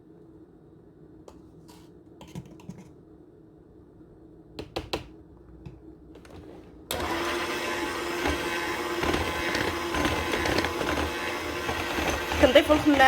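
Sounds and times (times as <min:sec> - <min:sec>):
electric mixer humming: 0:06.9 - 0:13.0.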